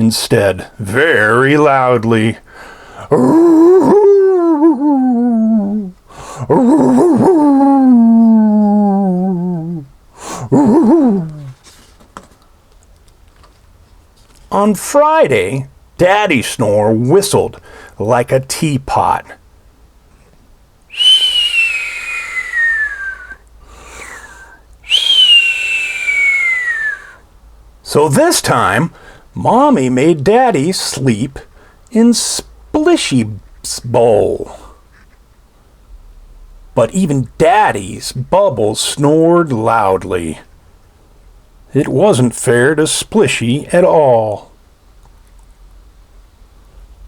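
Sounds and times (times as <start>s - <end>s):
soft breath: 2.5s - 3.1s, 17.6s - 18.0s, 23.6s - 24.7s
whistling snore: 21.0s - 23.4s, 24.0s - 27.2s.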